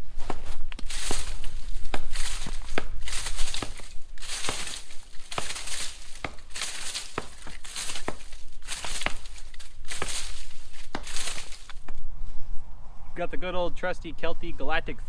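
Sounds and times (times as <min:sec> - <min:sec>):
dry leaves crunching and rustling: 0:00.0 - 0:11.9
twigs snapping: 0:00.2 - 0:12.0.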